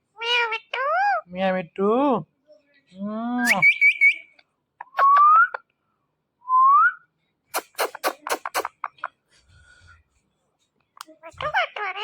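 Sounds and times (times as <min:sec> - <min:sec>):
parrot chirping and whistling: 0:03.4 - 0:04.3.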